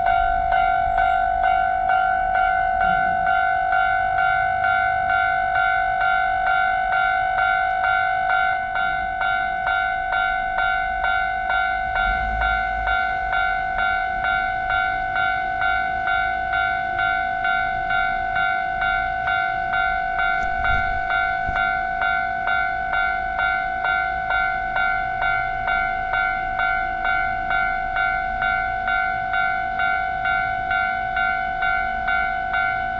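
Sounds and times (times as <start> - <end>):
level crossing bell ringing: 0.0 - 32.9
passing train rumble: 0.0 - 32.9.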